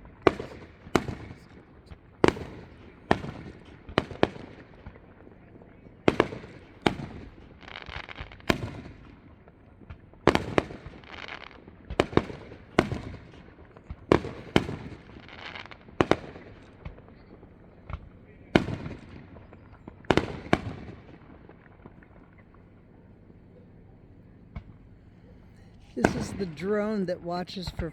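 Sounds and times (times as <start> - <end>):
firework bangs: 0.0 - 5.3, 6.0 - 23.4, 24.4 - 27.9.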